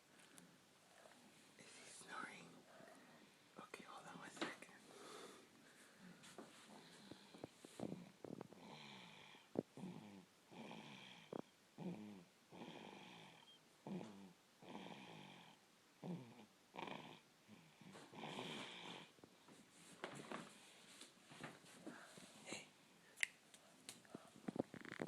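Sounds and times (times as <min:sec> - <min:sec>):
baby snoring softly: 0:06.7 - 0:19.1.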